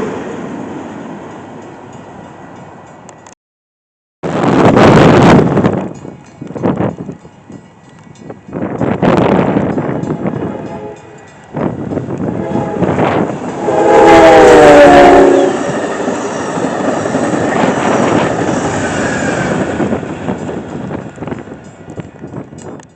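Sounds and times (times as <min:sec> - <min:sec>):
train cars rumbling past: 0:00.0 - 0:03.3, 0:04.3 - 0:22.9
wind buffeting microphone: 0:04.3 - 0:22.9
train horn blast: 0:09.8 - 0:18.3.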